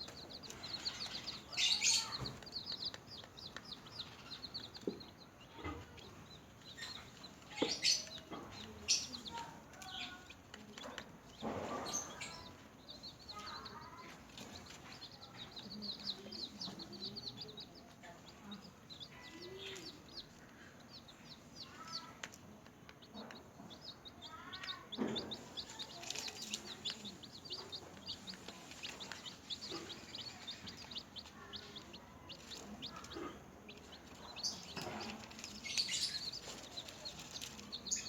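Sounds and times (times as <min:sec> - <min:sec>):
chicks peeping: 0:00.0 - 0:38.0
rustles: 0:25.3 - 0:33.1, 0:33.7 - 0:38.0.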